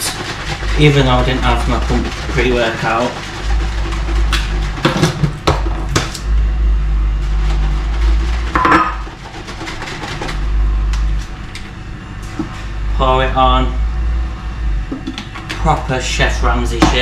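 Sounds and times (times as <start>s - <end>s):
steady low hum: 0.0s - 17.0s
utensil knocking against container: 16.8s - 17.0s.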